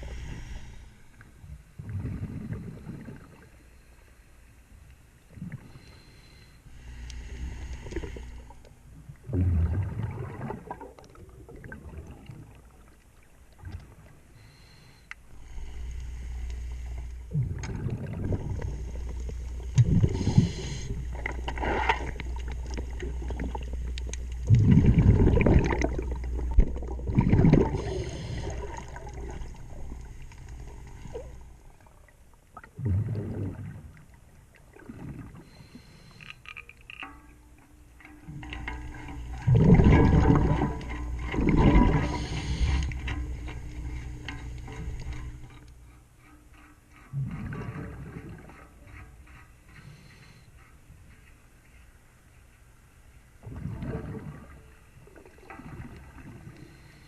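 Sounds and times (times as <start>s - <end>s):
exhaled bubbles gurgling underwater: 0.0s - 3.6s, 5.2s - 6.0s, 6.8s - 14.6s, 16.6s - 36.0s, 38.1s - 45.7s, 47.1s - 48.9s, 53.4s - 57.0s
steady low hum: 0.0s - 57.0s.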